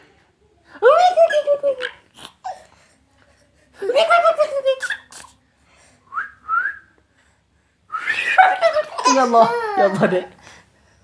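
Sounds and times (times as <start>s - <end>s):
toddler squealing laugh: 8.6s - 10.2s.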